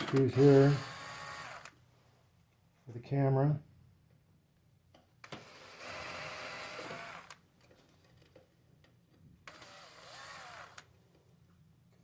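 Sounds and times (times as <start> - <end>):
cordless screw gun whirring: 0.0 - 1.8, 5.2 - 7.4, 9.5 - 10.9.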